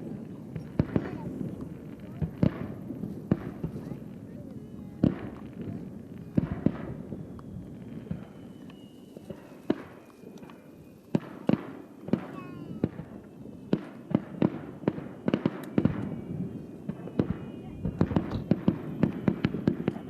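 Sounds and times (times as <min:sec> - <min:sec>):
distant firework bangs: 0:00.0 - 0:20.0
falling whistle tones: 0:07.0 - 0:11.2.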